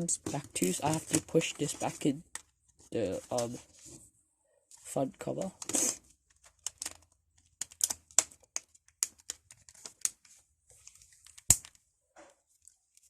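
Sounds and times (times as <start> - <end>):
plastic phone cover snapping: 6.4 - 10.2, 11.2 - 11.8.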